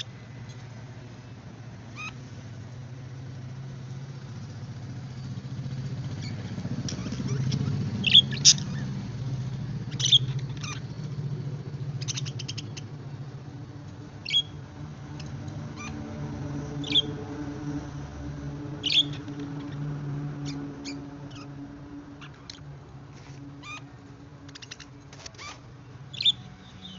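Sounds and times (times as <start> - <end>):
budgerigars chirping: 1.9 - 2.2, 6.2 - 9.0, 9.8 - 11.0, 11.9 - 12.9, 14.2 - 14.6, 15.2 - 16.0, 16.8 - 17.2, 18.8 - 19.8, 20.4 - 21.5, 24.5 - 26.9.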